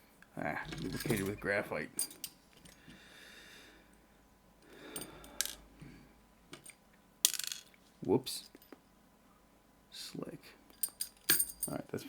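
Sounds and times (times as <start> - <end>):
metallic clicks of lock parts: 0.6 - 1.4, 2.0 - 2.8, 10.7 - 11.8
metallic clatter of slipping part: 0.6 - 2.8.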